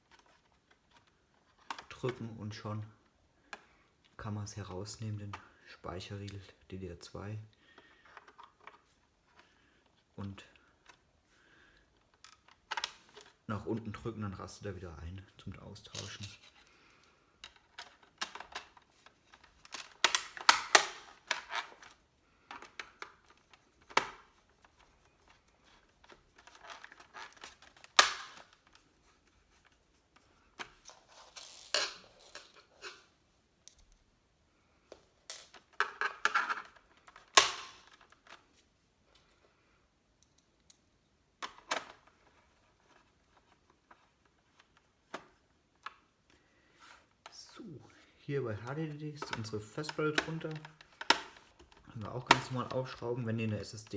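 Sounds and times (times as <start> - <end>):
plastic clicks and snaps: 17.0 - 24.3, 26.0 - 28.8, 35.3 - 38.4, 48.6 - 53.0.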